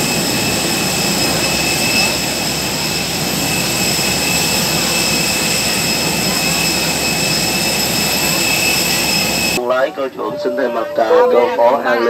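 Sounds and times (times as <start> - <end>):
high-pitched whining tones: 0.0 - 9.6
jet engine rush: 0.0 - 9.6.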